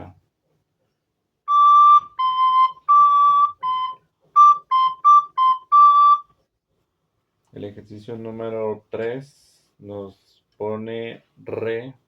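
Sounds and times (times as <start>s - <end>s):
recorder playing two alternating notes: 1.5s - 6.4s.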